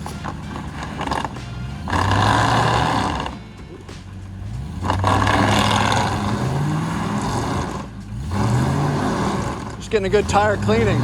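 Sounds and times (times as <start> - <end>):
engine revving hard: 0.0 - 3.4, 4.3 - 11.0
tires spinning on loose dirt: 0.0 - 11.0.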